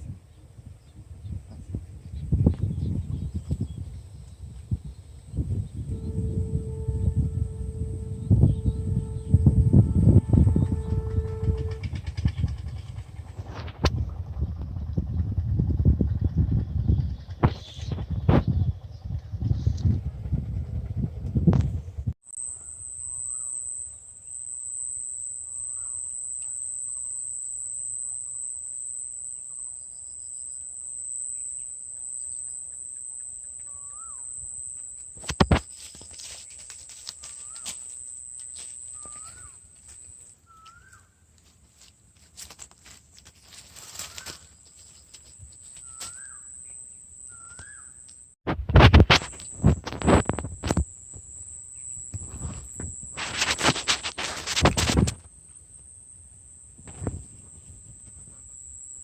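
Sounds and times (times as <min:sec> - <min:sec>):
high insect drone: 0:04.5 - 0:14.1, 0:22.3 - 0:59.0
bird calls: 0:22.6 - 0:23.7, 0:25.7 - 0:27.2, 0:31.4 - 0:34.4, 0:35.8 - 0:41.3, 0:43.6 - 0:48.2
clicks and rustling: 0:35.2 - 0:40.2.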